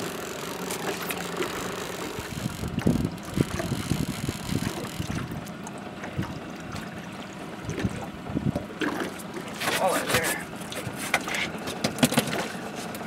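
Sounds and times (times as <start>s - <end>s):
water sloshing against hull: 0.0s - 13.0s
wind buffeting microphone: 2.2s - 5.4s, 7.6s - 8.8s.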